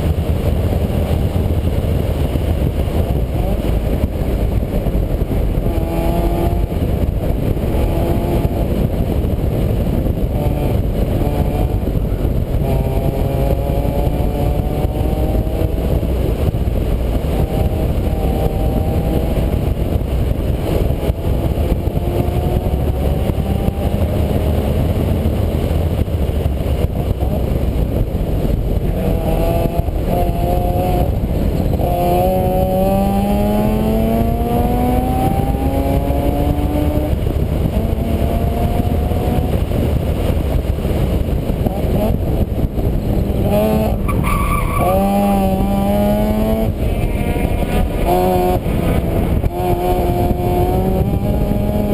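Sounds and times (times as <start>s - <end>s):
heavy low rumble: 0.0s - 51.9s
vehicle engine revving: 0.0s - 51.9s.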